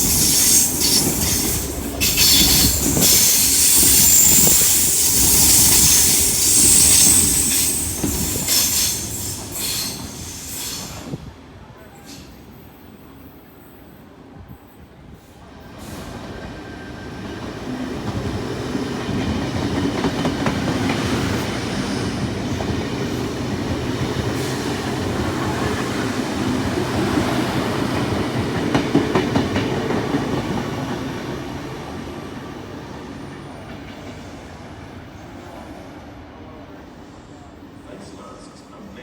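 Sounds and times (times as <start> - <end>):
electric train rumble: 0.0 - 11.6.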